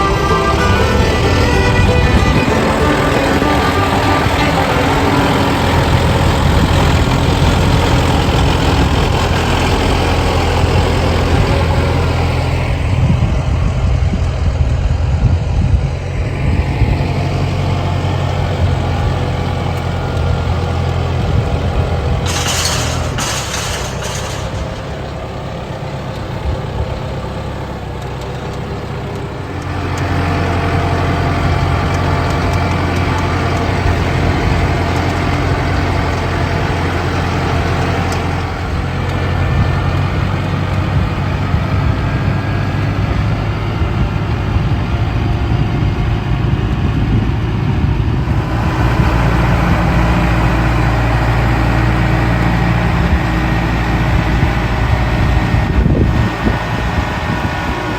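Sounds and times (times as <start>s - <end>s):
tractor diesel engine running: 0.0s - 57.9s.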